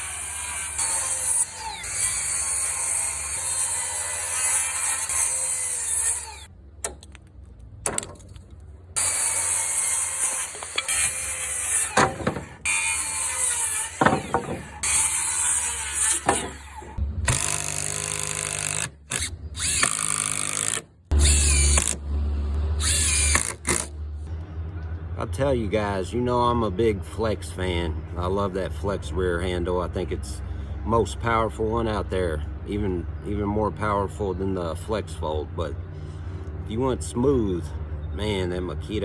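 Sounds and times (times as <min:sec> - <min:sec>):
power tool motors spinning: 0:00.0 - 0:06.5, 0:09.0 - 0:23.9.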